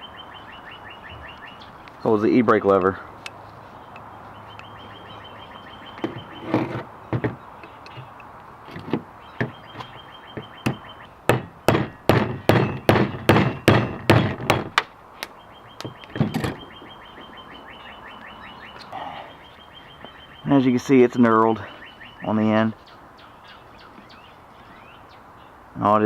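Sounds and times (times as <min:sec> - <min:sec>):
hammer striking metal punch: 0:10.6 - 0:14.8.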